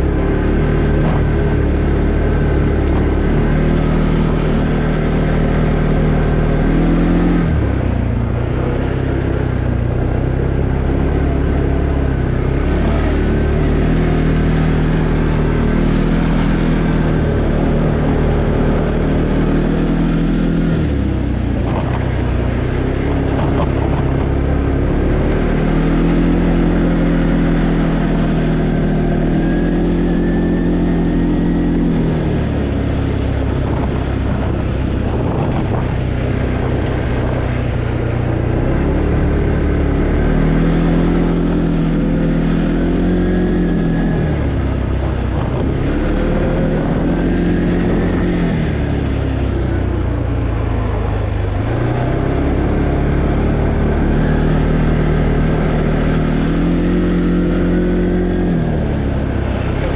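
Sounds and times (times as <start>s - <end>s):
atv engine running: 0.0s - 59.9s.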